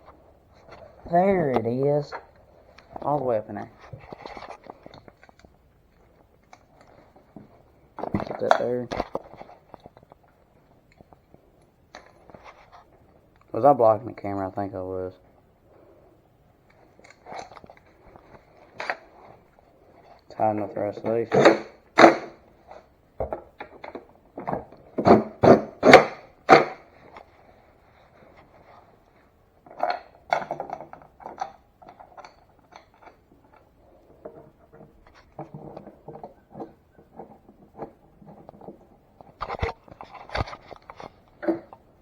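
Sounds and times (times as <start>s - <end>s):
hand tools clicking and scraping: 20.2s - 27.3s.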